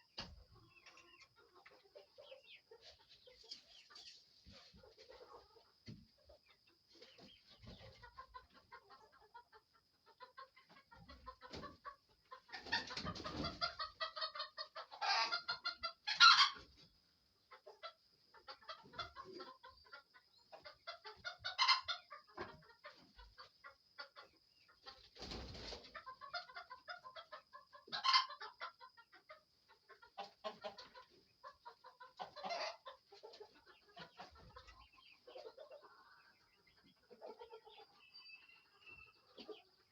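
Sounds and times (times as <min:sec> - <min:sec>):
chickens clucking: 0:00.0 - 0:39.9
chicken squawks: 0:10.1 - 0:16.7, 0:17.6 - 0:39.9.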